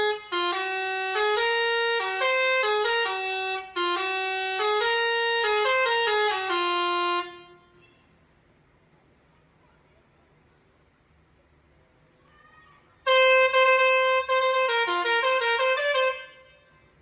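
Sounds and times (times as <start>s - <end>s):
musical air horn tune: 0.0s - 7.8s, 13.1s - 16.7s.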